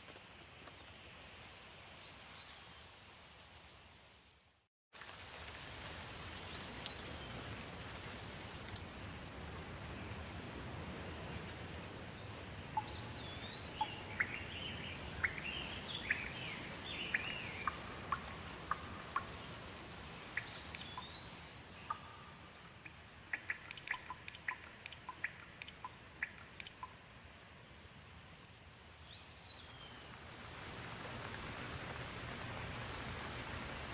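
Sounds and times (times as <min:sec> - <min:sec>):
steady rain: 0:00.0 - 0:33.9
birds chirping: 0:12.2 - 0:19.6, 0:20.2 - 0:27.0.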